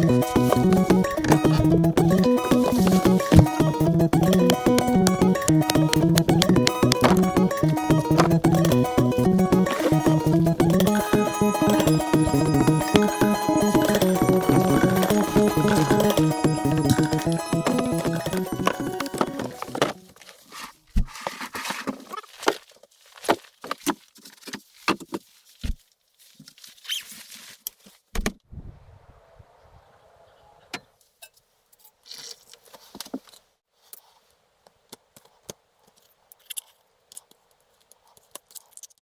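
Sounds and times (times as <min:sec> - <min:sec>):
sharp clicks and knocks: 0:00.0 - 0:20.0.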